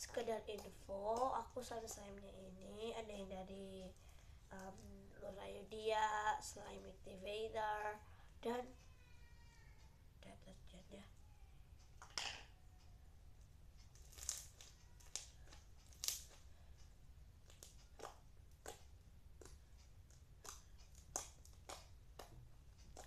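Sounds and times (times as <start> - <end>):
slime crackling and popping: 13.9 - 16.5, 17.4 - 23.0.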